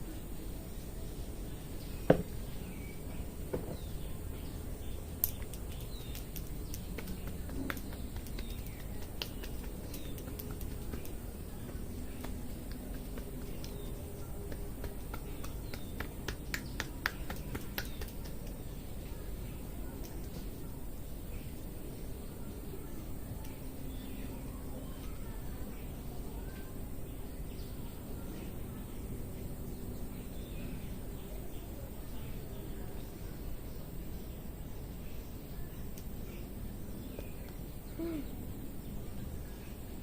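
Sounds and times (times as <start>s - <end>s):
hair cracking: 5.2s - 18.5s.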